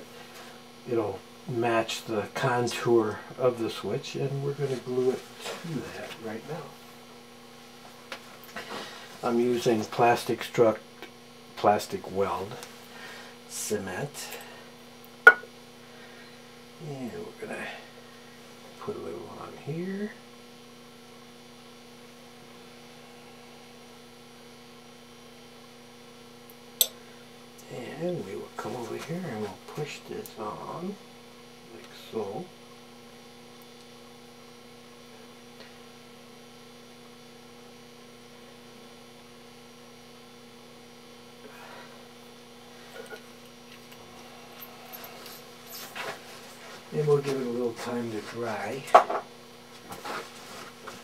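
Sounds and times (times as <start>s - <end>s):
electrical hum: 0.0s - 51.0s.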